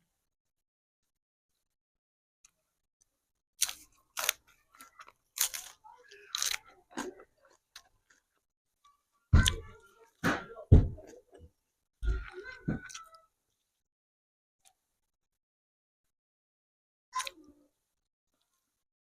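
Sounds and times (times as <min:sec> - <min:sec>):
crunchy bites and chewing: 0:03.6 - 0:08.4.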